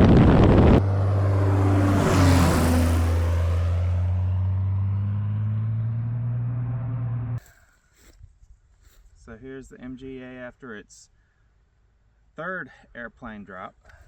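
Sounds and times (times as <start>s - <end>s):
loud rushing noise: 0.0s - 4.8s
light airplane engine droning: 0.1s - 7.4s.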